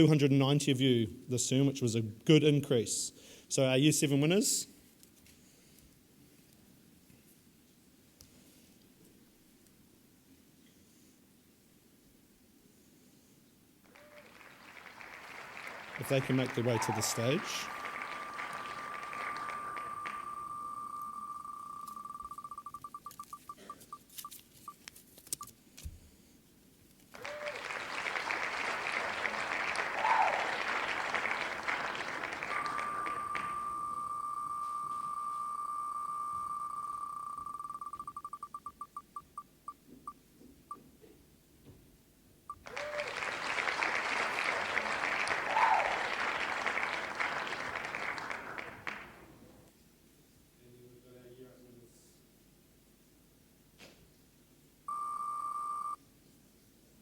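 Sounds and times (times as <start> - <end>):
applause and cheering effect: 13.9 - 22.3, 27.2 - 34.2, 42.5 - 49.2
prize wheel ticking: 16.1 - 23.5
short rising whistle: 16.6 - 22.3.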